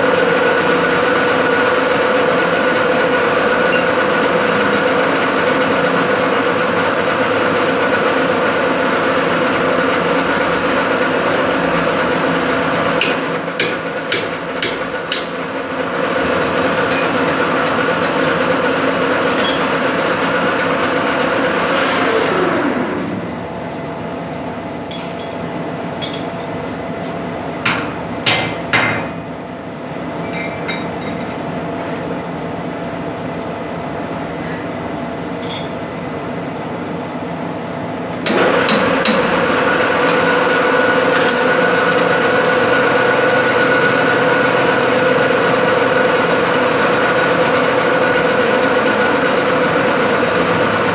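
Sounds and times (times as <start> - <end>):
metal clanks and clinks: 0.0 - 8.6, 19.2 - 19.9, 26.0 - 26.6, 35.4 - 35.9, 43.7 - 50.9
machine tool humming: 0.0 - 15.6, 39.4 - 50.9.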